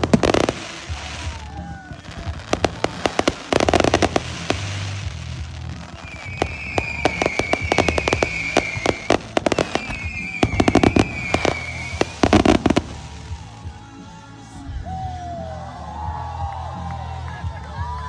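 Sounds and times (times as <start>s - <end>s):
fireworks bangs and crackles: 0.0s - 14.8s
high steady whistle: 6.0s - 12.3s.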